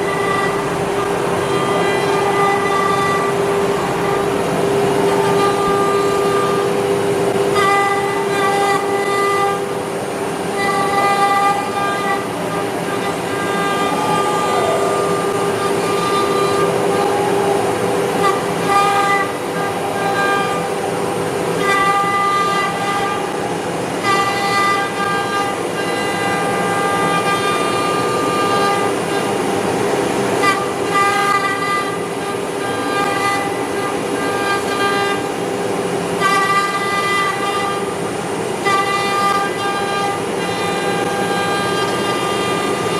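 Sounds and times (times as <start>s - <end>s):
router spindle whine: 0.0s - 42.9s
higher tones: 9.1s - 26.8s.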